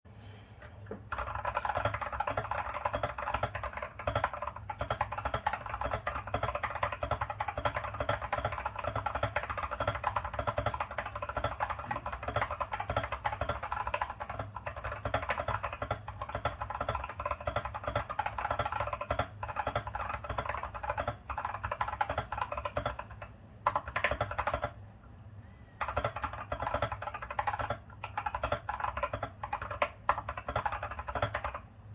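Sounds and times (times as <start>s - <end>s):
fast typing on mechanical keyboard: 1.0s - 24.8s, 25.8s - 31.7s.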